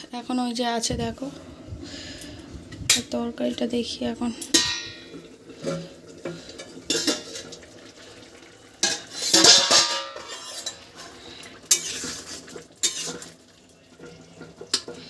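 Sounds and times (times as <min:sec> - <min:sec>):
metal utensils scraping cooking pot: 0:04.2 - 0:08.2, 0:08.8 - 0:15.0.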